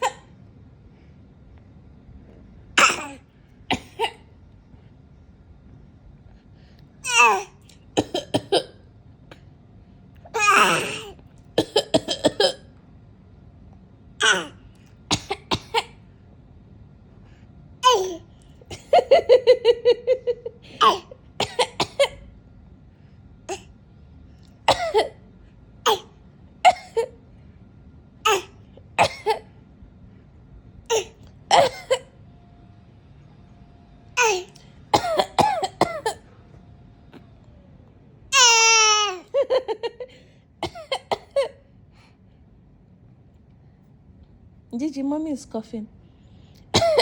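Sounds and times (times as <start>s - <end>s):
woman coughing: 0.0s - 0.3s, 2.8s - 4.3s, 8.0s - 8.8s, 10.6s - 12.7s, 15.1s - 16.0s, 20.7s - 22.2s, 24.7s - 25.2s, 26.7s - 27.2s, 29.0s - 29.5s, 30.9s - 32.2s, 34.2s - 36.3s, 39.5s - 41.6s, 46.7s - 47.0s.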